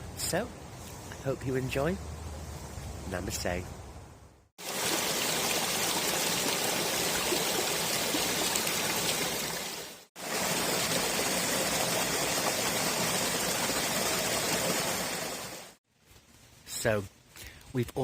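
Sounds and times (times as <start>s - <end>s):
running water rushing: 4.6s - 15.8s.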